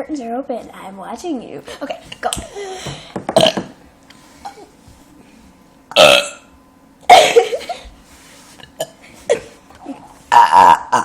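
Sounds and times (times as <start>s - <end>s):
person burping: 3.3s - 3.7s, 5.9s - 6.4s, 8.8s - 11.0s.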